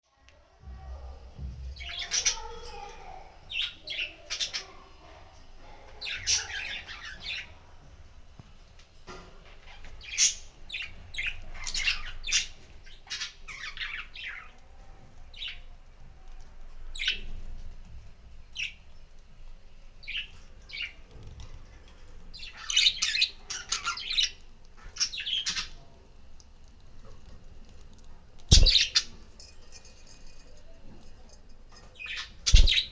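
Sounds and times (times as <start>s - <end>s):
budgerigars chirping and squawking: 3.5s - 4.8s, 6.0s - 7.6s, 9.7s - 14.5s, 22.3s - 25.8s, 28.5s - 29.2s, 31.9s - 32.9s.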